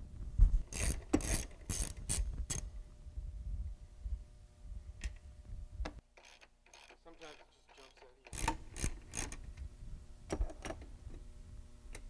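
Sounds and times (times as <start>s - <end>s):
ratchet wrench clicking: 0.7s - 2.6s, 6.2s - 7.0s, 7.7s - 9.5s.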